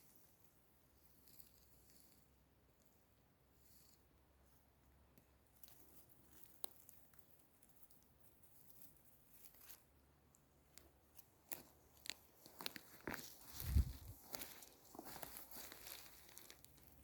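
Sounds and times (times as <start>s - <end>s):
crunching dry leaves and twigs: 5.5s - 10.0s, 10.7s - 17.0s.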